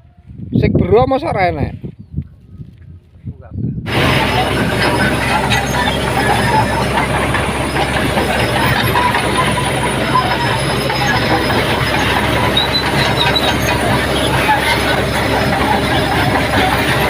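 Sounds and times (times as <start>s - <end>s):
bulldozer engine running: 3.8s - 17.0s
tracks clanking and squealing: 3.9s - 17.0s.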